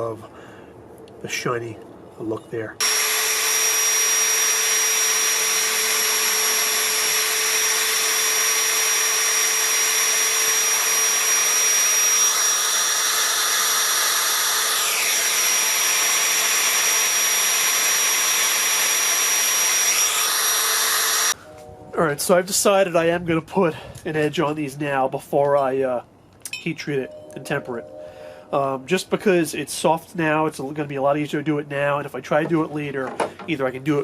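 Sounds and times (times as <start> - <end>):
wire brush wheel whining: 2.8 - 21.4.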